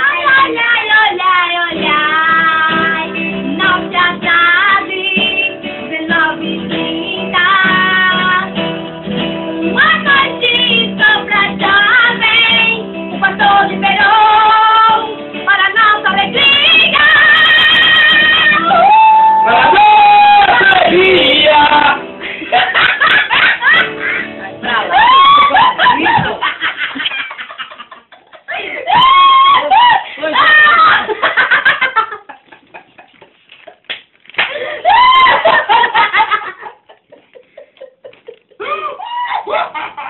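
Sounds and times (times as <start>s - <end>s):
woman singing: 0.0s - 8.6s, 9.6s - 19.4s
guitar accompaniment: 0.0s - 27.1s, 28.6s - 39.7s.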